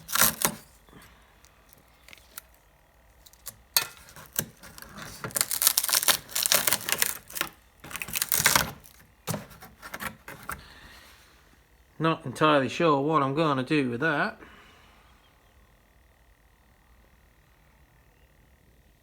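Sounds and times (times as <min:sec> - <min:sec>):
plastic parts clicking and rattling: 0:03.2 - 0:10.6.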